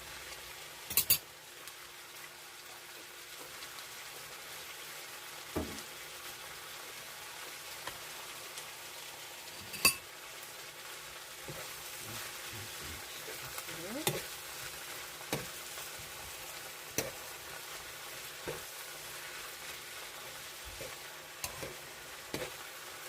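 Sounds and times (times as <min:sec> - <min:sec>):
stir-fry sizzling in a pan: 0:00.0 - 0:23.0.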